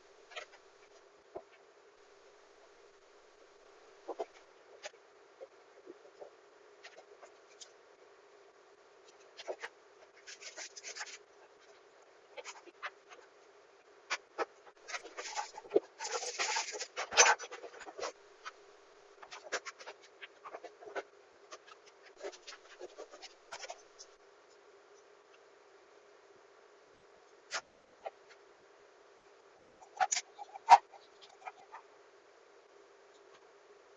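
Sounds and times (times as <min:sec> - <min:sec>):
scratching and clicking: 0:09.0 - 0:25.4, 0:29.8 - 0:31.9.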